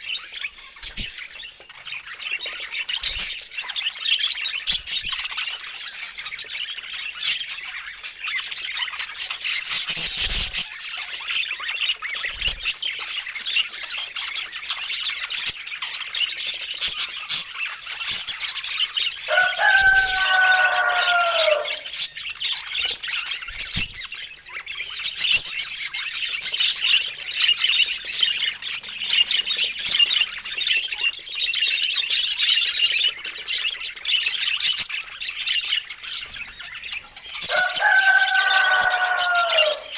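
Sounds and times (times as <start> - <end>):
budgerigars chattering and warbling: 0.0 - 39.9.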